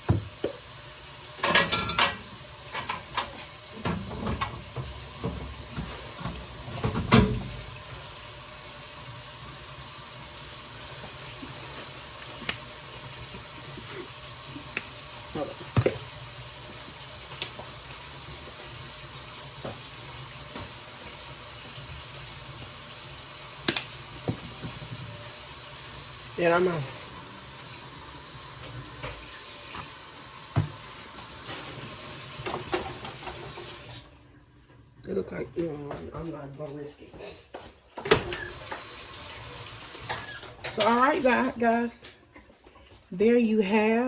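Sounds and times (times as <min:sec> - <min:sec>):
kitchen tap running: 0:00.0 - 0:36.1, 0:38.0 - 0:42.0.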